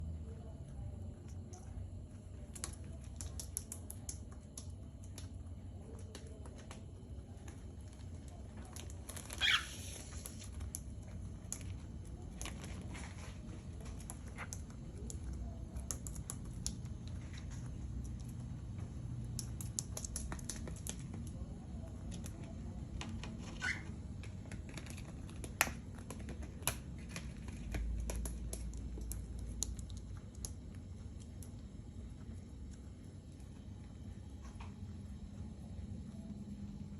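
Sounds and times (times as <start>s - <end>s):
birds crunching lettuce: 0.2s - 36.9s
bird chirp: 9.4s - 9.8s.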